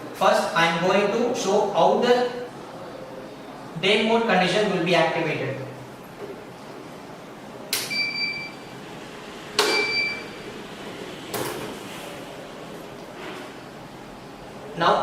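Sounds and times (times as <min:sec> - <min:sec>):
alarm panel beeping: 0:07.8 - 0:08.7, 0:09.6 - 0:10.4.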